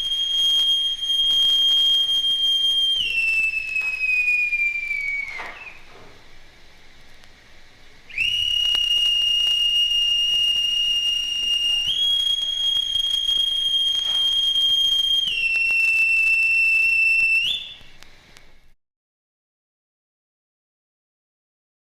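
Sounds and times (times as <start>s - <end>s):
high steady whistle: 0.0s - 6.2s, 8.1s - 18.1s.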